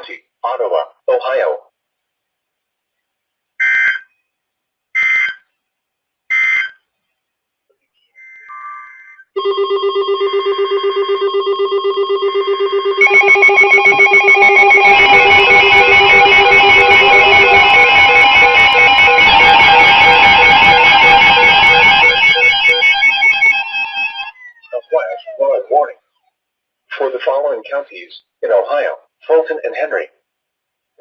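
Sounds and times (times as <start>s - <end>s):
pulsing chord music: 11.8s - 24.3s
digital alert data tones: 12.2s - 25.5s.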